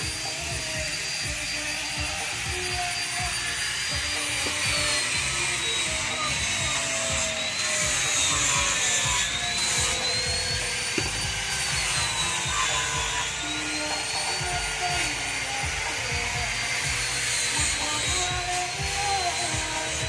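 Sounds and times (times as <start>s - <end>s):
background music: 0.0s - 20.0s
power tool whining: 0.0s - 20.0s.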